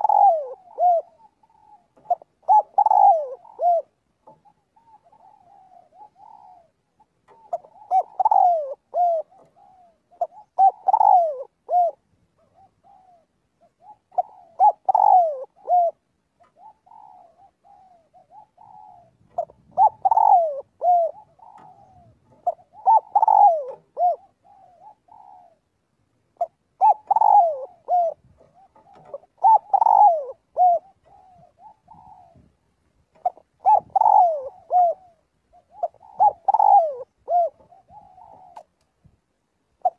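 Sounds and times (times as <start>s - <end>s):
dove cooing: 0.0s - 39.1s.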